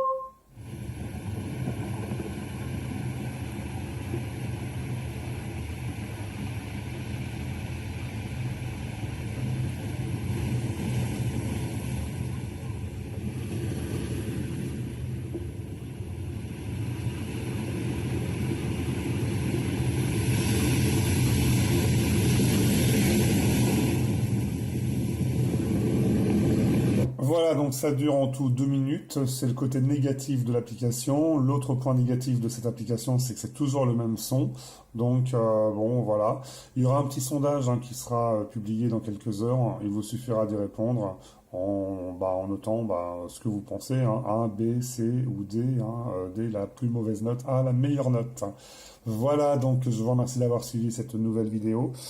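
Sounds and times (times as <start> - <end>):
ocean waves from a speaker: 0.0 - 28.1.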